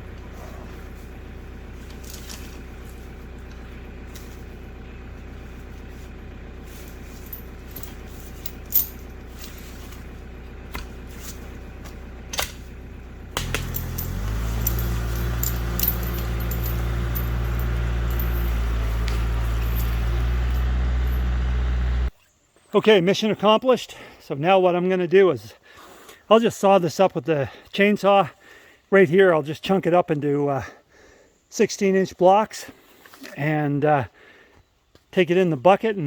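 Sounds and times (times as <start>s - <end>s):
tractor diesel engine: 0.0s - 22.1s
sharp metal clanks: 13.4s - 21.2s.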